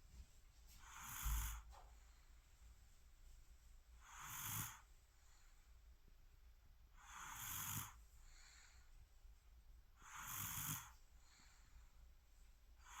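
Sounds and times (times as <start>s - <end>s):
faint breaths: 0.6s - 2.8s, 4.0s - 6.0s, 6.9s - 13.0s
baby snoring quietly: 0.8s - 1.8s, 4.0s - 4.9s, 7.0s - 8.8s, 10.0s - 11.5s, 12.8s - 13.0s.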